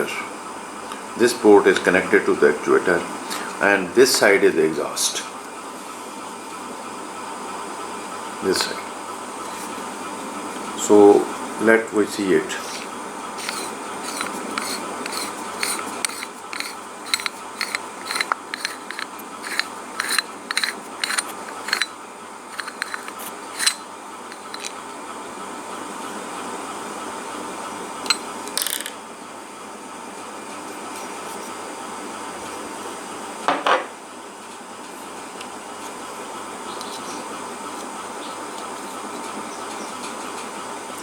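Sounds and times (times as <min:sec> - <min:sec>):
metal tool clicking on valve: 0:13.4 - 0:21.9, 0:22.6 - 0:24.7.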